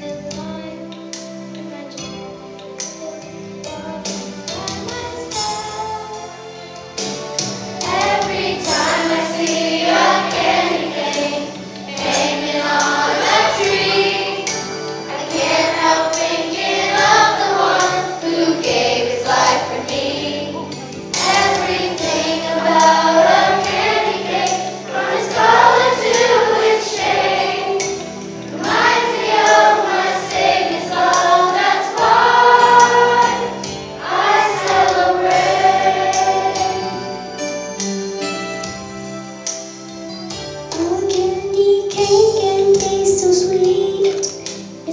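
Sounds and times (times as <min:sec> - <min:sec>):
instrumental accompaniment: 0:00.0 - 0:44.9
children's choir singing: 0:07.8 - 0:37.5.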